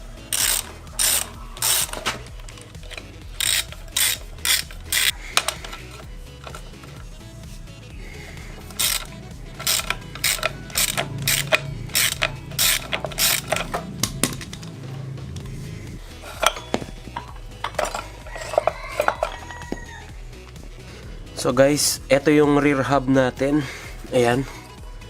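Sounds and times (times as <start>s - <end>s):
hand tools clicking on metal: 0.2s - 7.1s, 8.5s - 15.5s, 16.2s - 20.6s.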